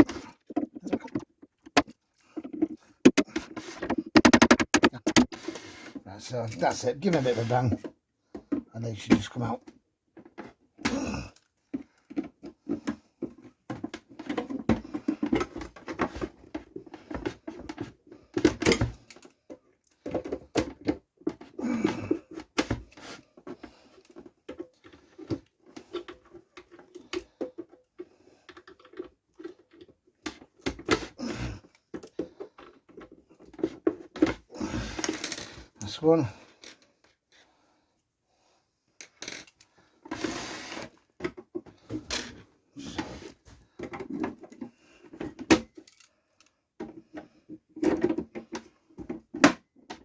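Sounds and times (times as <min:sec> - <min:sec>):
tool knocking on plastic hinge: 0:02.6 - 0:05.3.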